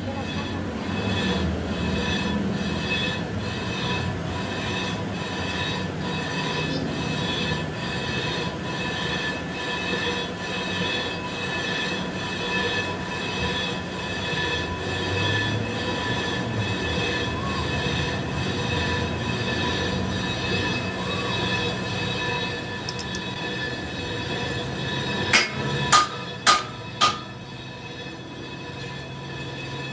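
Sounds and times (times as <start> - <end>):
metal machining squeal: 0.1 - 29.9
sharp metallic knock: 25.4 - 27.4.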